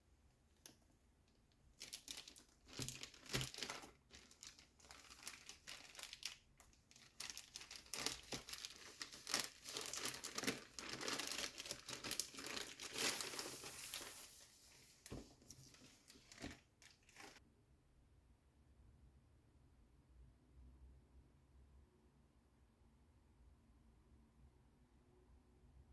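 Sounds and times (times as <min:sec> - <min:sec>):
packaging crinkling and tearing: 0:01.8 - 0:17.4.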